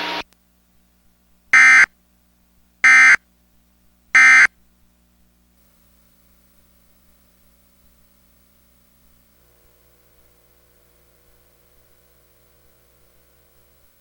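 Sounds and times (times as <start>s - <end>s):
digital data tone bursts: 0.0s - 0.2s, 1.6s - 1.9s, 2.8s - 3.2s, 4.2s - 4.5s.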